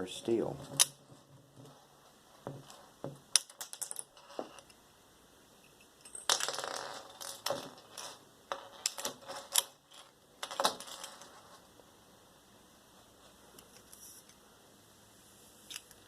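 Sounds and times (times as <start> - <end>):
metal rivets clinking: 0.6 - 1.1.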